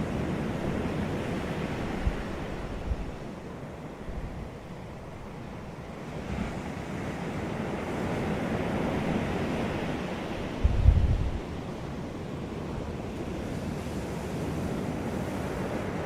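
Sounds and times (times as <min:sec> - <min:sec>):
wind buffeting microphone: 0:00.0 - 0:03.4, 0:06.1 - 0:12.1
sea waves breaking: 0:00.0 - 0:16.0.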